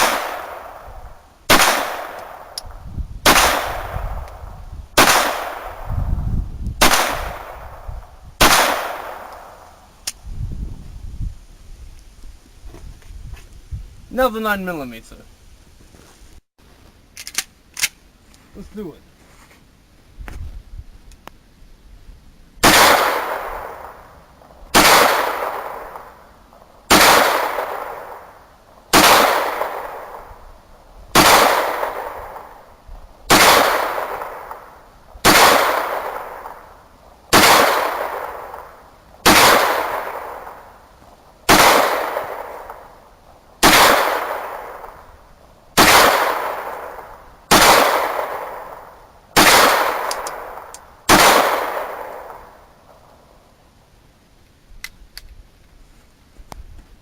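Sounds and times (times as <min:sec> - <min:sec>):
pistol shots with echo: 0:00.0 - 0:00.9, 0:01.5 - 0:02.6, 0:03.3 - 0:04.0, 0:05.0 - 0:05.9, 0:06.8 - 0:09.6, 0:22.6 - 0:24.1, 0:24.8 - 0:26.2, 0:26.9 - 0:28.3, 0:28.9 - 0:30.3, 0:31.2 - 0:32.6, 0:33.3 - 0:36.7, 0:37.3 - 0:40.7, 0:41.5 - 0:43.0, 0:43.6 - 0:45.1, 0:45.8 - 0:52.6.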